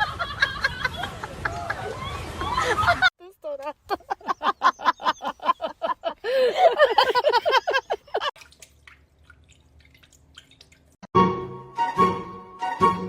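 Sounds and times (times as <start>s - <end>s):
watery drips bubbling: 8.4s - 11.0s
music: 11.2s - 13.0s.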